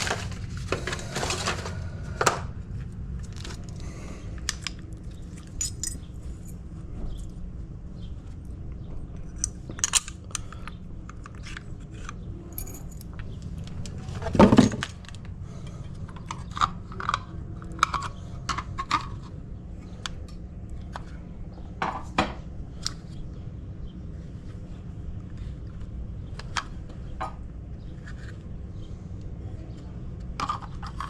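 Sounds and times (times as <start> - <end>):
metal lock parts clicking: 4.4 - 6.1, 9.2 - 15.2.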